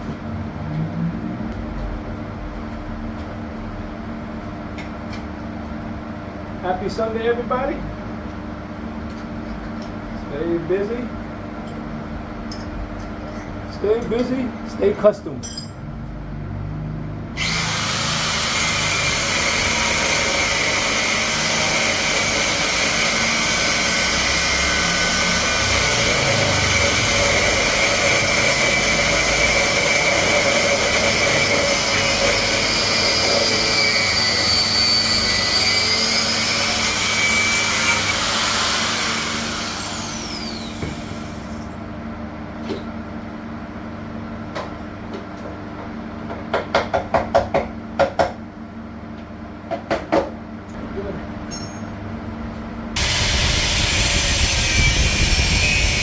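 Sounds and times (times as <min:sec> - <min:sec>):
electric motor whining: 0:17.4 - 0:41.6, 0:53.0 - 0:56.0.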